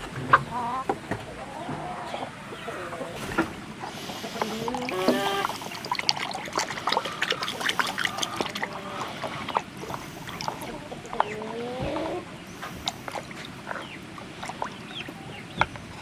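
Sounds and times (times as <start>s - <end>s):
chickens calling: 0.0s - 16.0s
pouring trickling sound: 4.3s - 11.2s.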